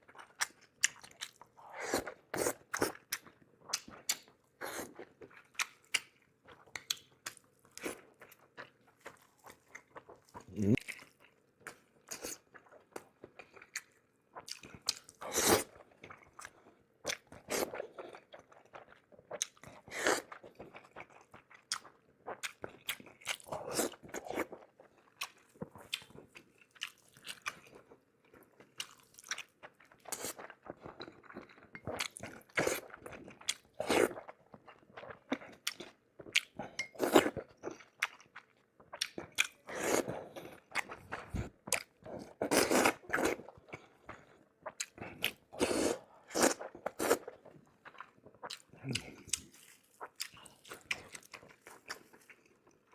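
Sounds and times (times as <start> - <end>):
wet chewing: 28.7 - 52.9.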